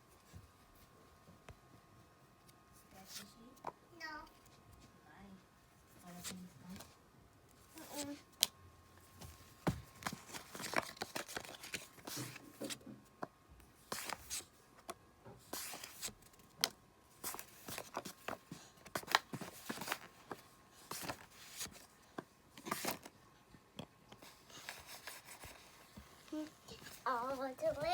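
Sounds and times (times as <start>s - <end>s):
trading cards snapping and rustling: 9.6s - 12.9s, 15.6s - 21.9s.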